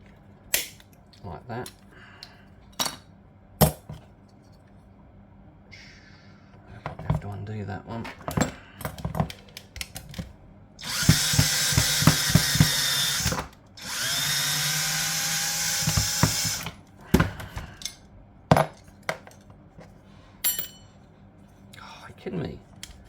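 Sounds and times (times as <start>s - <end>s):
clicks and knocks of parts: 8.0s - 10.3s
power drill motor: 10.8s - 16.8s.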